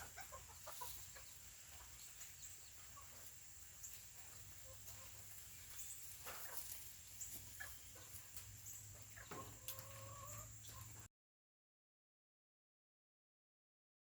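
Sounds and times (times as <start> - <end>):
chickens clucking: 0.0 - 11.1.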